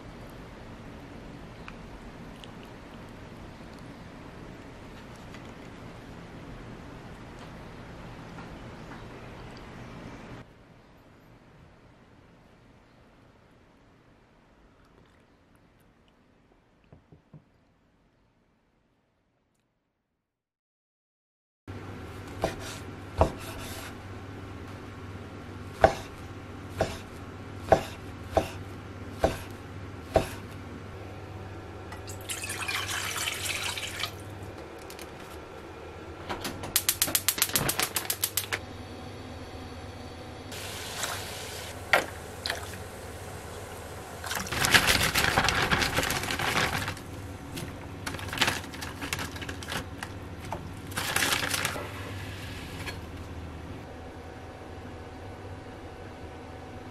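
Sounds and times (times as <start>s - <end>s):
low appliance hum: 0.0s - 19.6s, 21.7s - 56.9s
water running: 32.0s - 34.4s, 40.5s - 44.8s.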